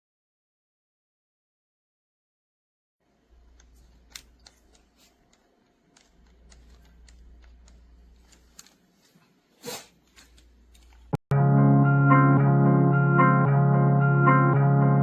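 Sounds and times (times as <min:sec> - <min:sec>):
faint clicks: 0:03.3 - 0:09.2
handling noise: 0:03.3 - 0:11.2.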